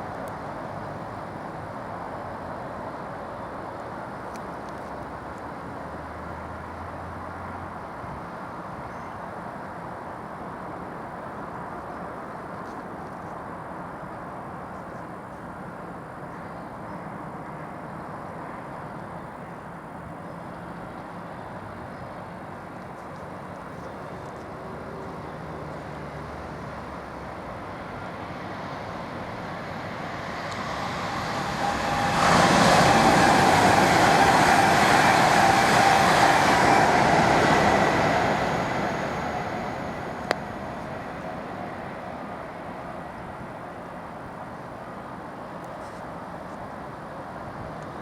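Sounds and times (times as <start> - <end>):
diesel locomotives passing: 15.4 - 48.0
steady whine: 28.2 - 43.3.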